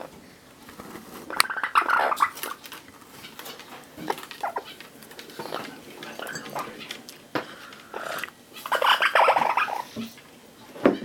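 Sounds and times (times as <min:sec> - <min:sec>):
parrot call: 0:07.9 - 0:10.0.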